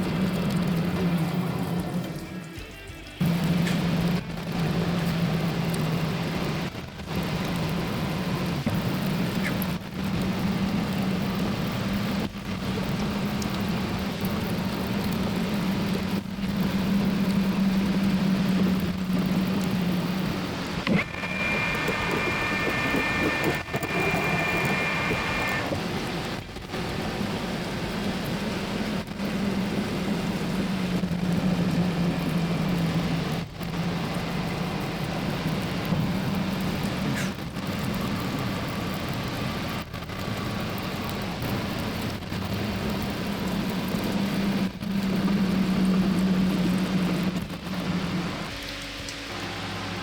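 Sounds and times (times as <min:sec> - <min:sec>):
high whine: 0:02.0 - 0:39.4
lathe cutting steel: 0:20.6 - 0:26.1.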